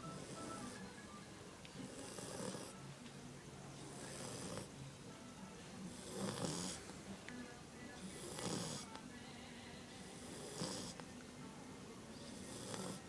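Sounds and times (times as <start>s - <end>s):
dog snoring: 0.0s - 0.9s, 1.8s - 2.8s, 3.8s - 4.8s, 5.9s - 7.0s, 8.0s - 8.9s, 10.0s - 11.1s, 12.2s - 13.0s.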